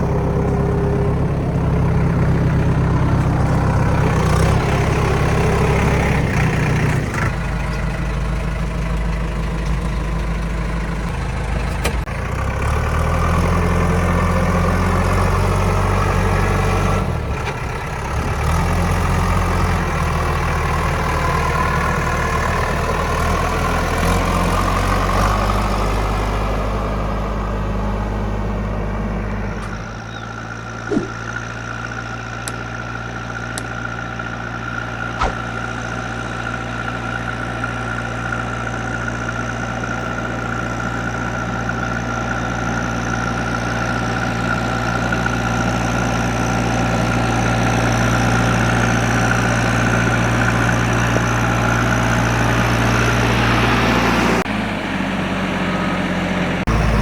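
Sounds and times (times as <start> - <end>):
diesel engine revving and whining: 0.0 - 57.0
short knocks: 30.9 - 31.3.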